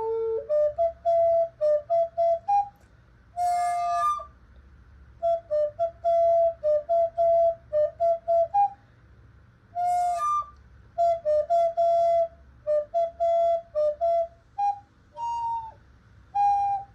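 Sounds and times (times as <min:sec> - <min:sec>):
recorder playing a melody: 0:00.0 - 0:02.8, 0:03.4 - 0:04.4, 0:09.8 - 0:15.8, 0:16.4 - 0:16.9.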